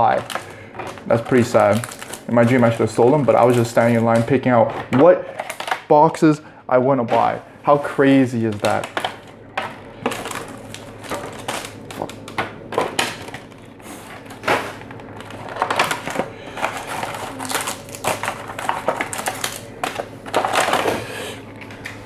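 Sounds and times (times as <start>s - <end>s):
plastic shrink-wrap crinkling: 0.0s - 4.6s, 8.2s - 9.4s, 10.0s - 21.0s.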